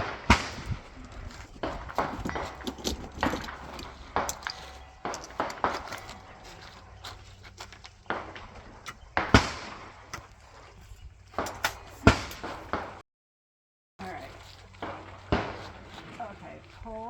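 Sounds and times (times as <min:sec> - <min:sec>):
shotgun shots with echo: 0:00.0 - 0:02.6, 0:08.1 - 0:10.2, 0:11.4 - 0:13.0.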